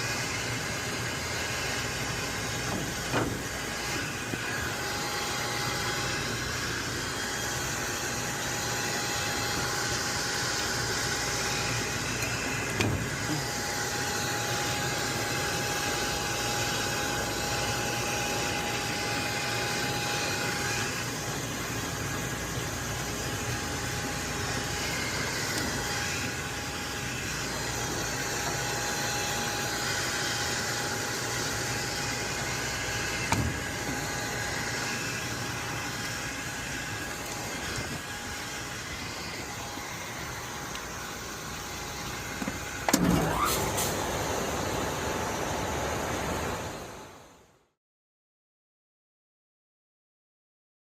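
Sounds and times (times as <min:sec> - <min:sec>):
cooling tower fan rushing: 0:00.0 - 0:47.5
faint steady whine: 0:00.0 - 0:47.6.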